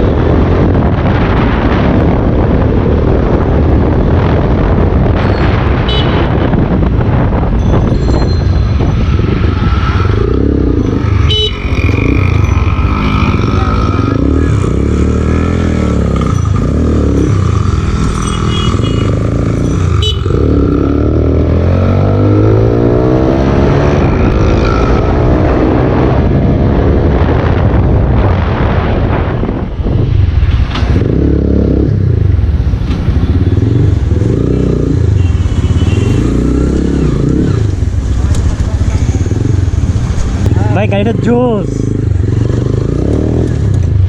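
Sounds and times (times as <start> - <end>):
motorcycle engine revving: 8.7 - 27.6, 30.6 - 44.0.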